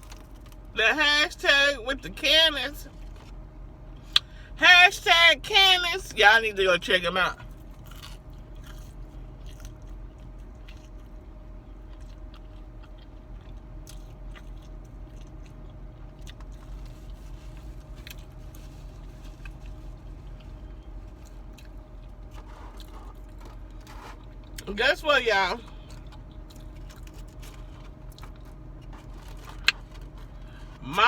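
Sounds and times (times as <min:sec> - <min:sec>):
steady low hum: 0:00.0 - 0:31.0
food crunching: 0:07.4 - 0:24.7, 0:25.6 - 0:30.8
person chewing food: 0:07.4 - 0:24.7, 0:25.6 - 0:30.8.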